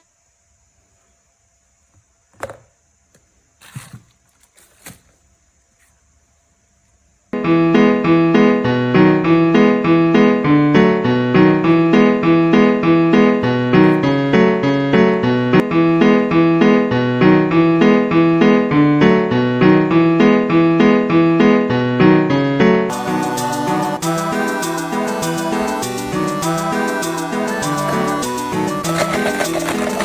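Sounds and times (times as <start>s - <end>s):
keyboard tune of repeated notes: 22.7s - 30.0s.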